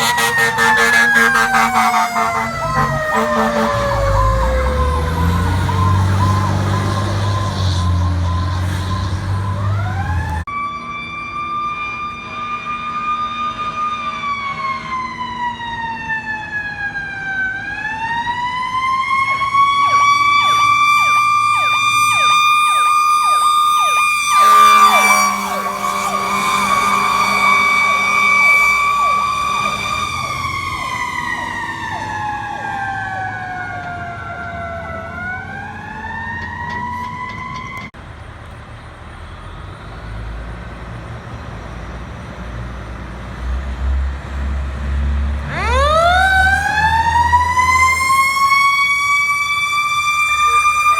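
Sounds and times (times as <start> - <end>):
air horn blasts: 0.0 - 4.5, 20.4 - 31.2
siren wailing: 0.0 - 37.9, 45.4 - 50.9
siren yelping: 0.0 - 37.9, 45.5 - 50.9.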